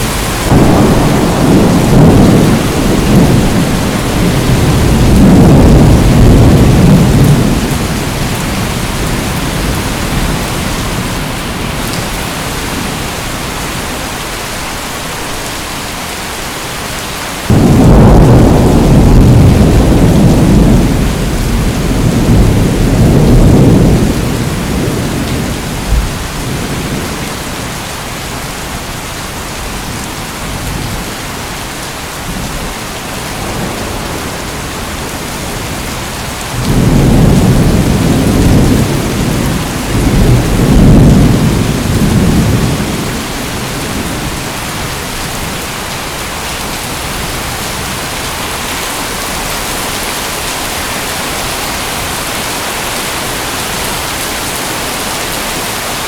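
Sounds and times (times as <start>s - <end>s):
rolling thunder: 0.0s - 13.2s, 17.5s - 27.8s, 33.2s - 45.7s
steady rain: 0.0s - 56.0s.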